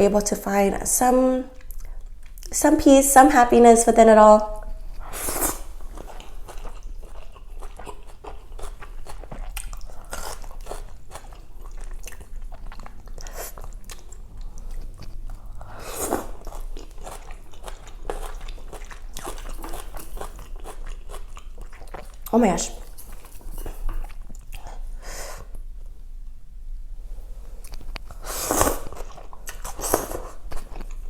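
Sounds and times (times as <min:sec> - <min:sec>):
wet chewing and biting: 0:04.9 - 0:24.8, 0:27.6 - 0:31.0.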